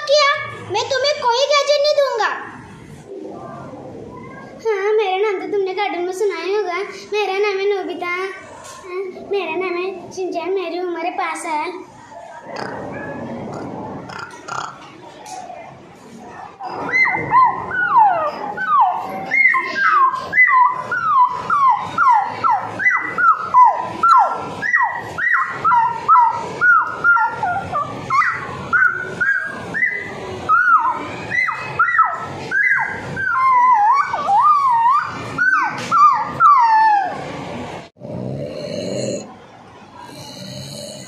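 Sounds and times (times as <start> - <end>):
child imitating puppy yelps: 16.7 - 37.2.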